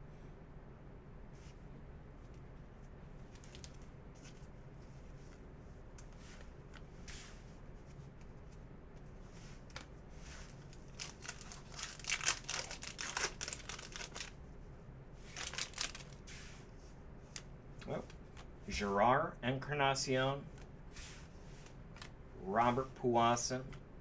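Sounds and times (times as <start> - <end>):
cards being handled: 3.2 - 14.4, 15.2 - 18.9, 20.4 - 22.9
wrapper tearing and crinkling: 10.4 - 14.4, 15.2 - 16.2.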